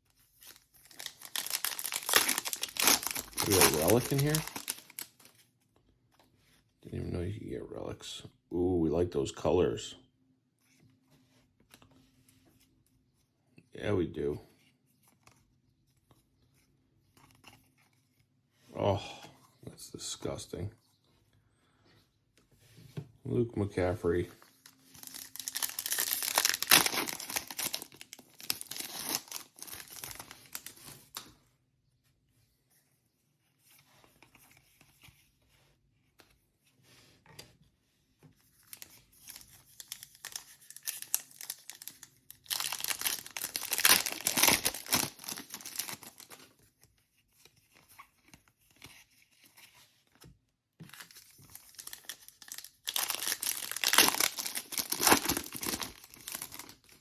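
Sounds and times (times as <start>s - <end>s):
foil wrappers tearing and crinkling: 0.5s - 5.2s, 24.9s - 31.0s, 38.7s - 46.4s, 51.5s - 57.0s.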